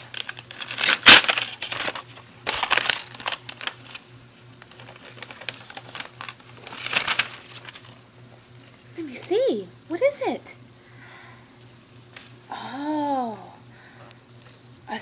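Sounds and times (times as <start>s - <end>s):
wrapping paper crinkling and tearing: 0.0s - 8.0s.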